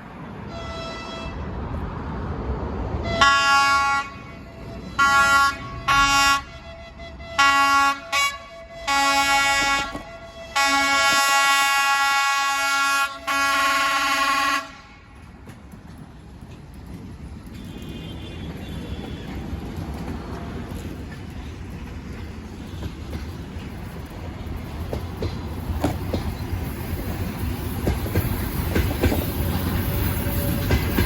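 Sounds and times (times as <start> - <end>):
train rolling past: 0.0 - 31.0
locomotive horn blasts: 0.5 - 1.4, 3.0 - 15.1.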